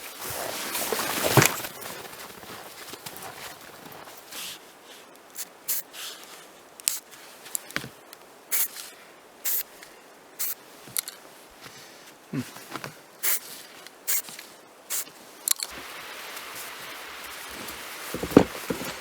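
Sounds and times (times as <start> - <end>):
short scuffing footsteps: 17.6 - 19.0.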